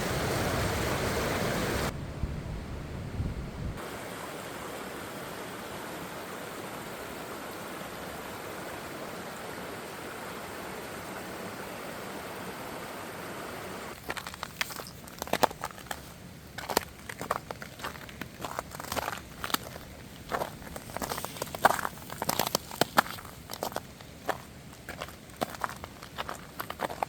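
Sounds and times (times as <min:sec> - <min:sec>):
stream rushing: 0:00.0 - 0:02.0, 0:03.8 - 0:27.0
crunching footsteps: 0:13.9 - 0:27.0.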